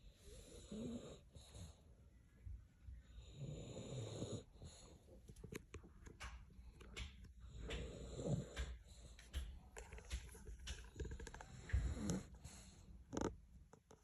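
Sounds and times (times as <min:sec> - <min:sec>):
dog snoring: 0:00.0 - 0:01.8, 0:03.0 - 0:05.0, 0:07.5 - 0:09.0, 0:10.9 - 0:13.3.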